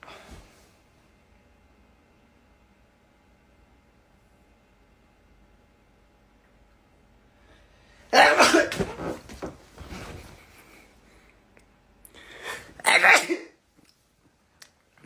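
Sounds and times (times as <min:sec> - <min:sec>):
person sneezing hard: 0:08.1 - 0:09.2, 0:12.5 - 0:13.6.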